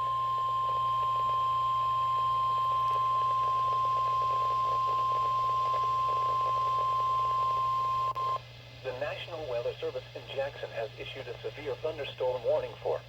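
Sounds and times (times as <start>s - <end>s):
faint static: 0.0s - 13.0s.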